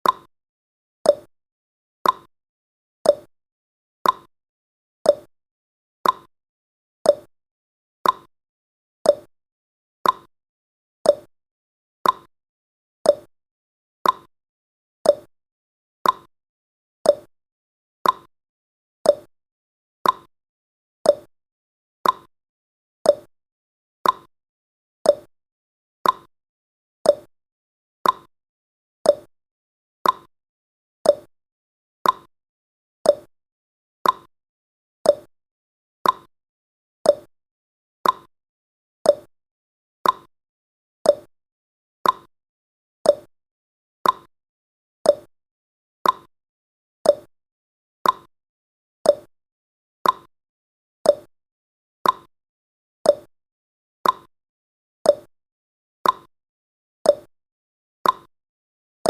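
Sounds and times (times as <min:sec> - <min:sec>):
clock ticking: 0:38.0 - 0:38.3, 0:42.0 - 0:42.3, 0:44.0 - 0:44.3.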